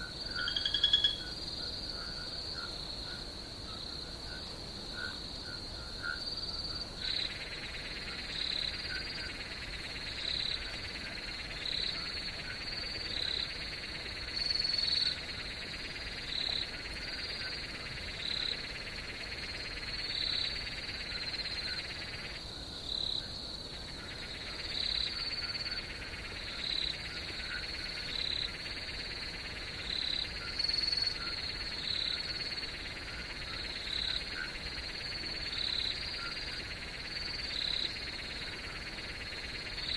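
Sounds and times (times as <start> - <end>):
frog calling: 0.0 - 3.3
insects trilling: 0.0 - 39.9.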